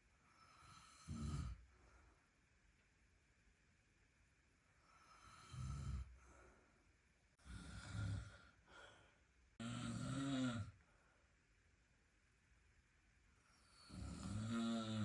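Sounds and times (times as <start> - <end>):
quiet breathing: 0.0 - 2.6, 4.6 - 11.6, 13.3 - 15.0
person snoring: 0.5 - 1.6, 7.4 - 8.5, 9.6 - 10.7, 13.7 - 15.0.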